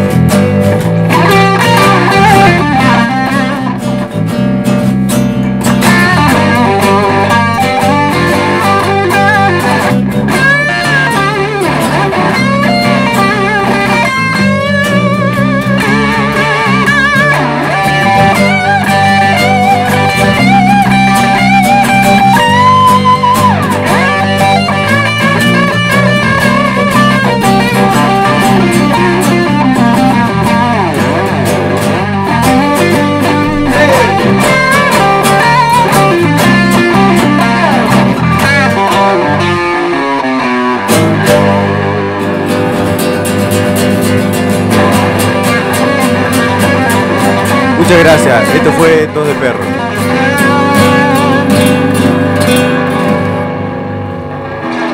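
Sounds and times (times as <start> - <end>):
bass and drums: 0.0 - 40.1
electric guitar lead with bent notes: 0.0 - 54.9.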